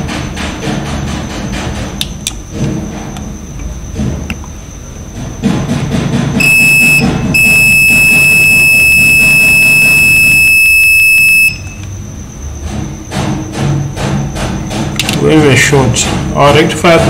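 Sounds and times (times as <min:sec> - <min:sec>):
multimeter continuity beep: 0:06.4 - 0:11.9.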